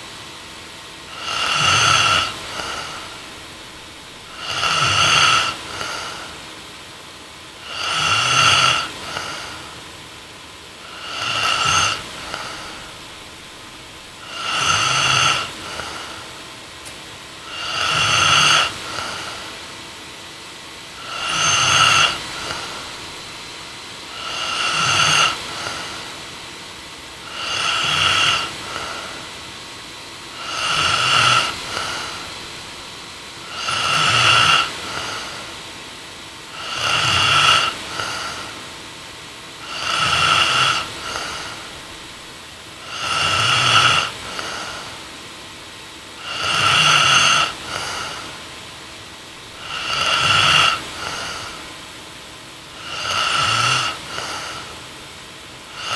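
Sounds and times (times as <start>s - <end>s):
woman snoring: 0.9s - 6.8s, 7.5s - 9.9s, 10.7s - 16.6s, 17.3s - 26.5s, 27.1s - 29.6s, 30.2s - 45.2s, 46.2s - 48.6s, 49.2s - 51.8s, 52.6s - 54.9s, 55.6s - 55.9s.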